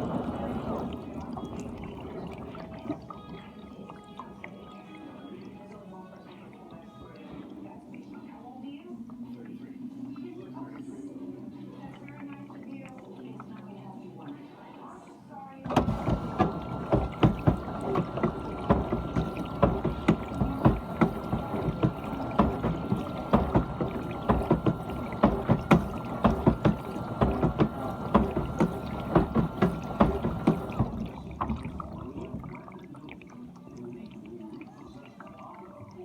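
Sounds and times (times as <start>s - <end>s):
water spraying in dishwasher: 0.0s - 8.2s, 15.6s - 36.0s
dishwasher motor whine: 0.0s - 12.9s, 15.4s - 36.0s.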